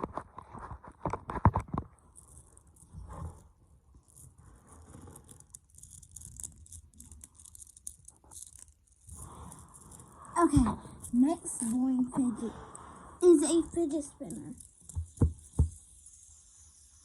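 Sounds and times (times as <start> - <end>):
soft rustling and scraping: 0.0 - 15.9
fidget toy clicks: 13.4 - 16.2.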